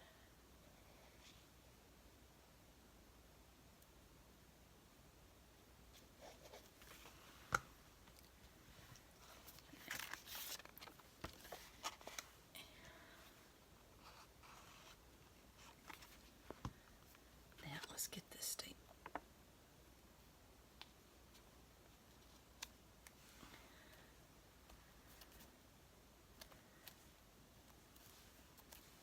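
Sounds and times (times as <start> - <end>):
paper rustling: 9.2 - 12.3.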